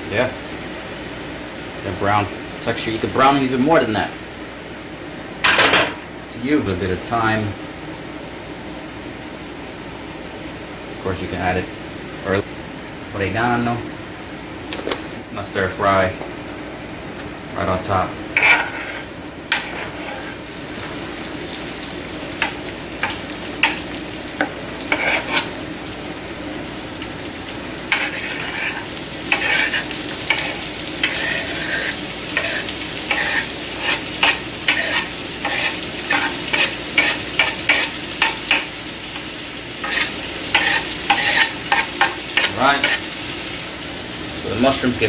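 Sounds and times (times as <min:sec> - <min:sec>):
vegetables sizzling in a pan: 0:00.0 - 0:07.4, 0:17.7 - 0:45.0
utensil scraping and clacking on pan: 0:18.4 - 0:25.7, 0:27.8 - 0:43.3.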